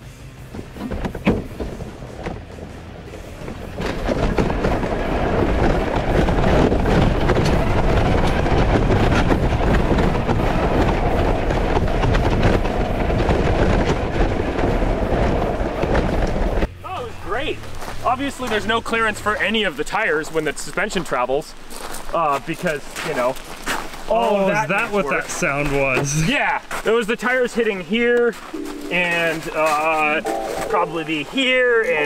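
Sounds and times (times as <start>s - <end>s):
toy car rattling rumble: 0.6s - 16.7s.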